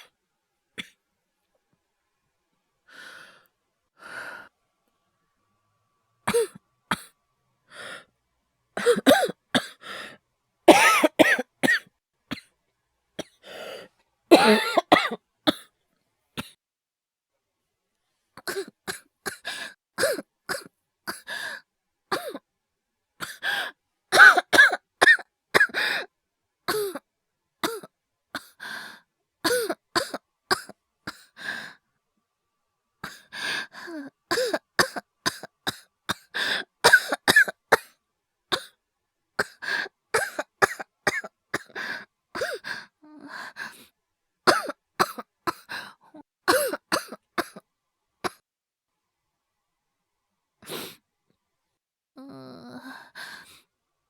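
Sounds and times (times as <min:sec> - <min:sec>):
person coughing: 0:06.3 - 0:07.1, 0:08.8 - 0:09.8, 0:10.7 - 0:12.5, 0:14.3 - 0:15.7, 0:22.2 - 0:22.4, 0:24.2 - 0:25.8, 0:26.7 - 0:27.0, 0:27.6 - 0:28.5, 0:29.5 - 0:31.3, 0:34.3 - 0:36.3, 0:36.9 - 0:37.9, 0:40.2 - 0:41.8, 0:44.5 - 0:45.7, 0:46.5 - 0:47.6.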